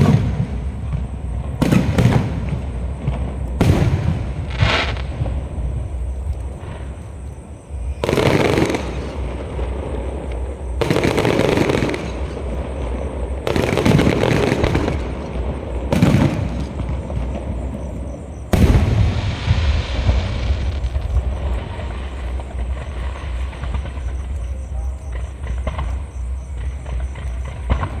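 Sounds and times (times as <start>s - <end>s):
fireworks booming: 0.0s - 28.0s.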